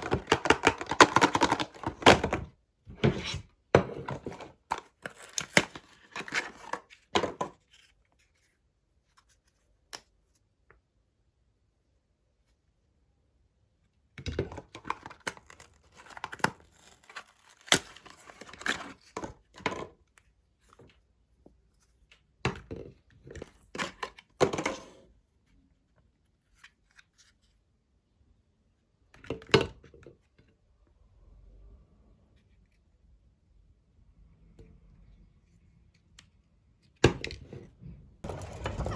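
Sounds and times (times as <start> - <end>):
packaging crinkling and tearing: 14.8 - 19.2.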